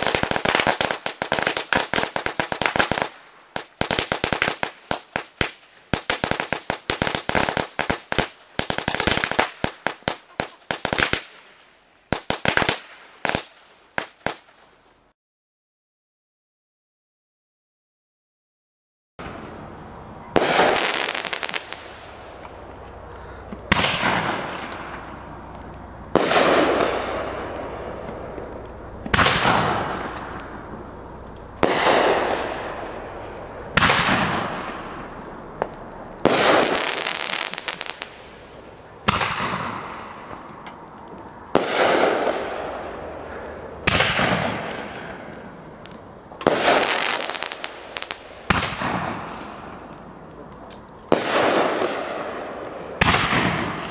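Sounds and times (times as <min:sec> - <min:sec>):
fireworks bangs: 0:00.0 - 0:15.0, 0:19.2 - 0:53.9.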